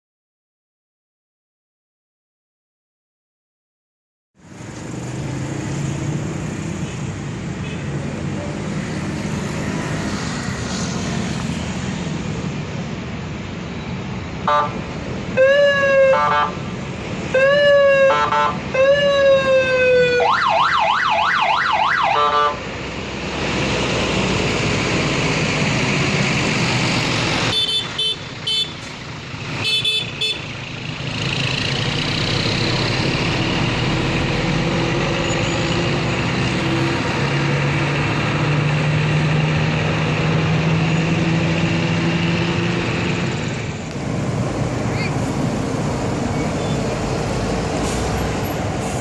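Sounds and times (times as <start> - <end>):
bus engines and traffic: 4.4 - 49.0
warbling bus horn: 14.4 - 14.8, 16.1 - 16.6, 18.1 - 18.6, 22.0 - 22.6, 27.5 - 28.9, 29.6 - 30.6.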